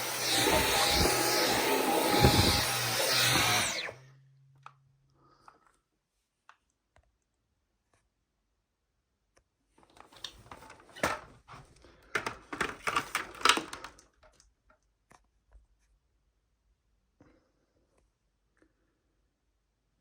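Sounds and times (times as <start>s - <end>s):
plastic clicks and rattles: 12.0s - 15.3s.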